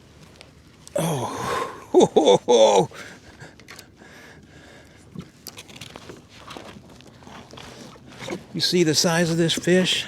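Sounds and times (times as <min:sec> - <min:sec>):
man gasping: 0:01.0 - 0:01.9
man grunting exclamations: 0:01.0 - 0:02.9.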